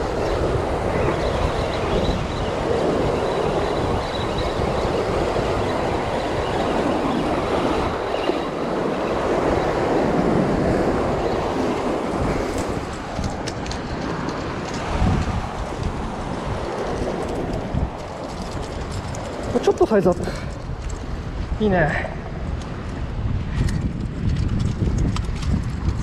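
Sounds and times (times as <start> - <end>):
sea waves on rocky shore: 0.0 - 20.2
wind buffeting microphone: 0.0 - 26.0.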